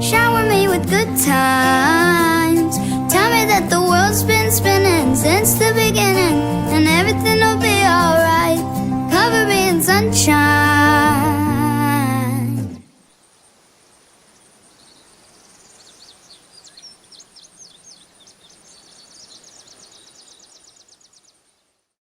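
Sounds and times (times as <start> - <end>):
songbird chirping and trilling: 13.0 - 21.9.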